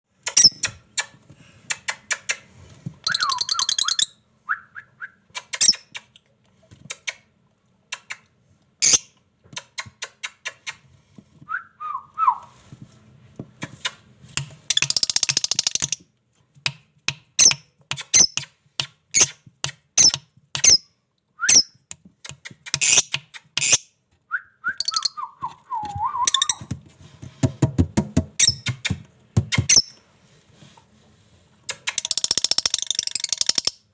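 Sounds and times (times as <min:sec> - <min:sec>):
parrots chirping: 0:03.1 - 0:04.2, 0:08.8 - 0:09.1, 0:26.2 - 0:26.7
parrot falling whistles: 0:24.7 - 0:26.6.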